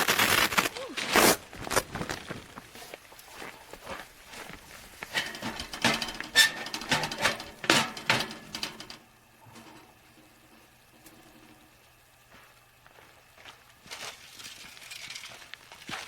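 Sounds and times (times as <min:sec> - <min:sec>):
faint steady hum: 0:00.0 - 0:16.0
irregular knocks and clatters: 0:03.8 - 0:10.0.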